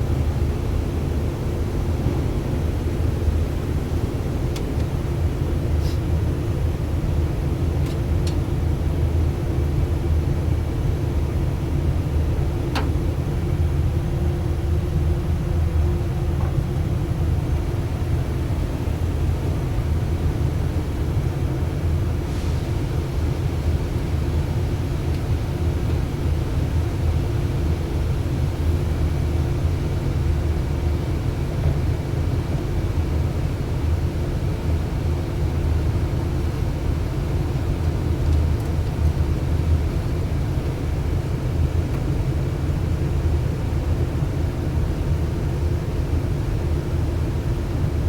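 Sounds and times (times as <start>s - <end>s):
air handling unit hum: 0.0s - 48.0s.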